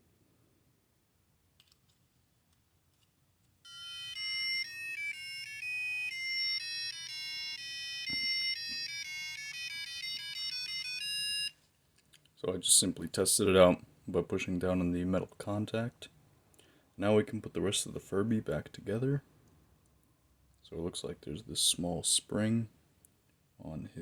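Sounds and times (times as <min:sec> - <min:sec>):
electronic toy beeping tune: 0:03.7 - 0:11.6.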